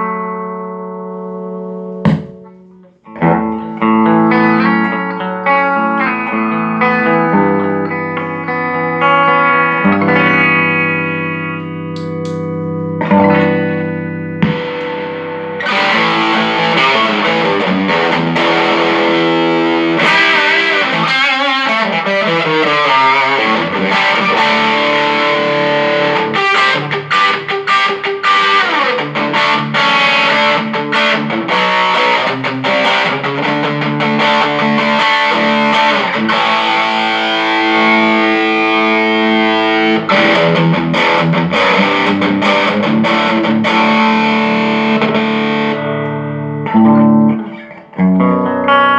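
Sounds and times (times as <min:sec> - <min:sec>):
distorted electric guitar: 0:00.0 - 0:48.9.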